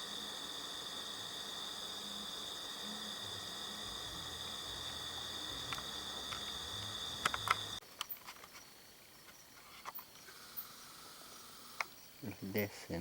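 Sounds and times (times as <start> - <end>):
high even drone: 0.0 - 7.8
insects chirring: 0.0 - 13.0
sharp clicks: 5.6 - 8.2.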